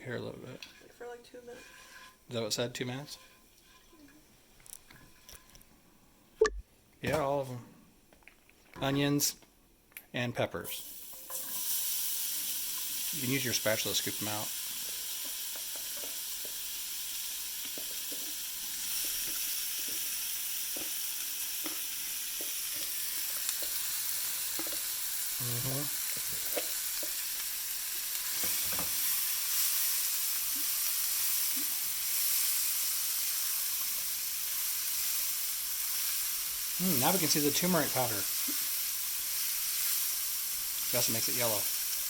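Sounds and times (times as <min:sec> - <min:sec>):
spatula scraping pan: 0:00.6 - 0:02.4, 0:03.0 - 0:04.1
vegetables sizzling in oil: 0:10.7 - 0:42.0.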